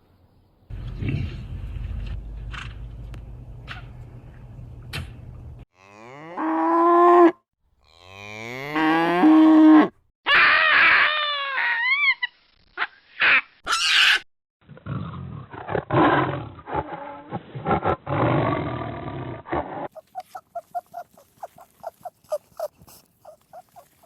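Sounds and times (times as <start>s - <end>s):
cows mooing: 5.8s - 9.9s
baboon calls and barks: 10.3s - 14.2s, 19.9s - 24.0s.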